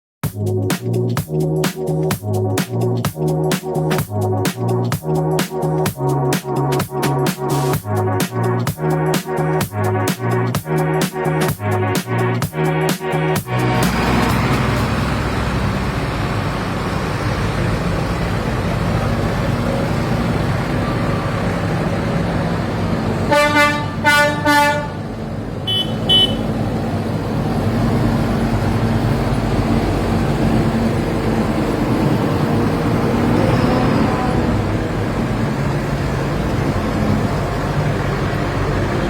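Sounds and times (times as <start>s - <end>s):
tractor engines running: 0.2s - 39.0s
loud horn blasts: 23.3s - 25.0s, 25.6s - 26.5s
short high-pitched toots: 25.7s - 26.4s.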